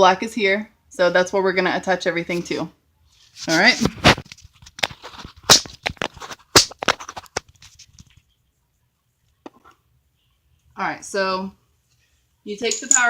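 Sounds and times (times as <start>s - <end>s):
clicks and knocks from handling cable: 4.1s - 8.2s.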